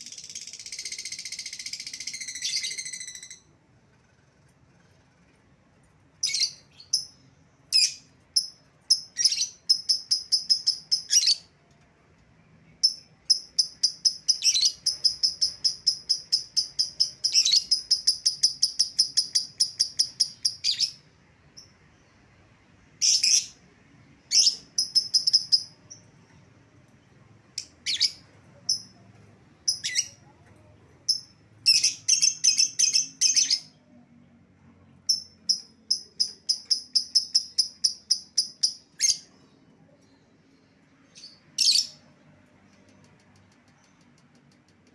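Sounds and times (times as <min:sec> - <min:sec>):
lovebird chattering: 0:29.6 - 0:30.2.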